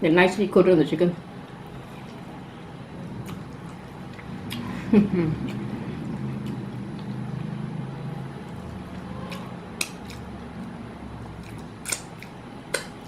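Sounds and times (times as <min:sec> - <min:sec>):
steady low hum: 0:00.0 - 0:13.0
person chewing food: 0:03.2 - 0:07.6, 0:08.2 - 0:13.0.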